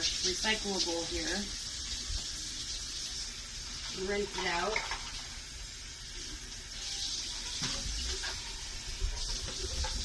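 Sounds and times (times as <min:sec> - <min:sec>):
tap running into sink: 0:07.5 - 0:10.0.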